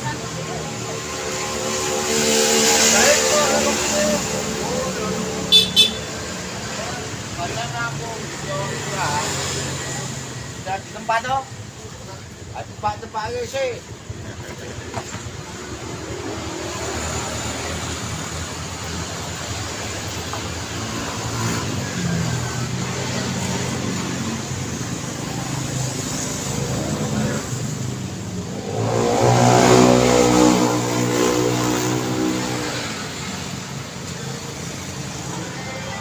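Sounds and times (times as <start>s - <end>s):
passing traffic: 0.0s - 36.0s
vehicle passing close: 15.4s - 35.3s.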